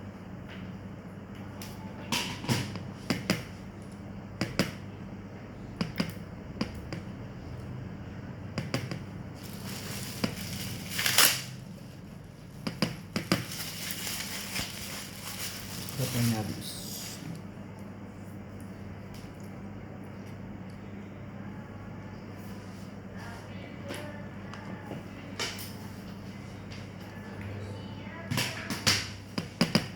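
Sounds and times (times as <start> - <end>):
rustling: 9.4 - 11.5, 13.4 - 17.2.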